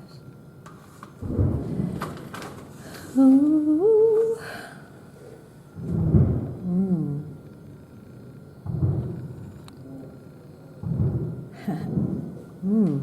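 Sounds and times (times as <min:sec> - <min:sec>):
muffled fireworks booms: 0:01.2 - 0:02.3, 0:05.8 - 0:06.7, 0:08.6 - 0:09.5, 0:10.8 - 0:12.4.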